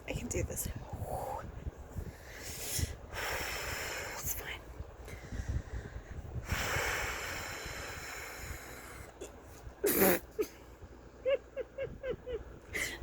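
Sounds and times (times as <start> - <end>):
long breath: 2.0 - 4.2, 5.1 - 9.2
woman hiccuping: 9.2 - 10.6.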